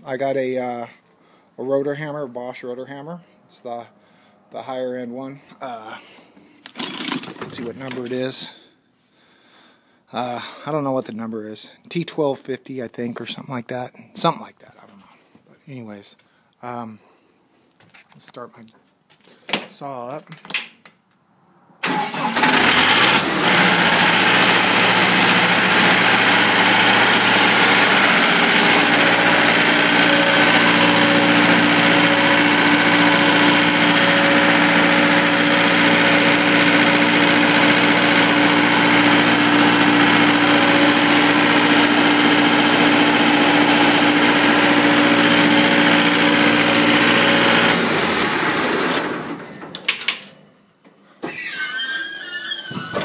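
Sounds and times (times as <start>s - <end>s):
floor saw engine running: 21.8s - 49.7s.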